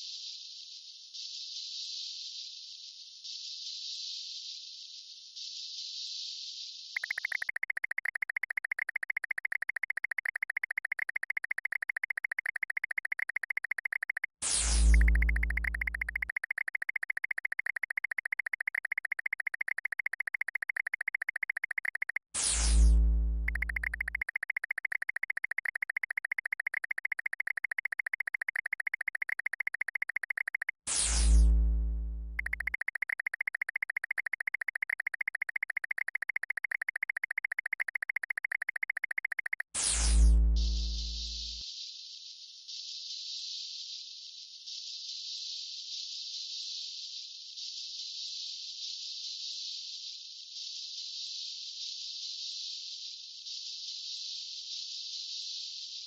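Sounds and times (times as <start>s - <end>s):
pulsing high electronic chirr: 7.0s - 41.6s.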